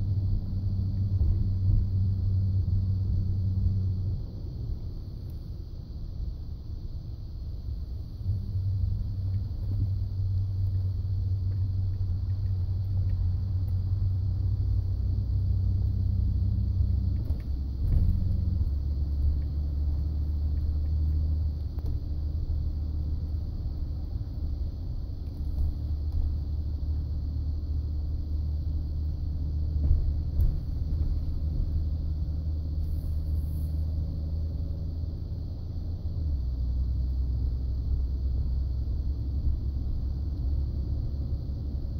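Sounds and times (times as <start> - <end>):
pickup truck engine rumble: 0.0 - 41.9.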